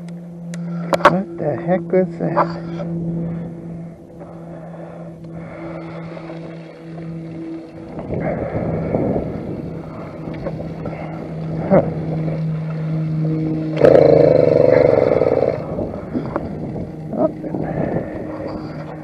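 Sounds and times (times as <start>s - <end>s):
two-stroke engine revving: 10.8s - 17.6s.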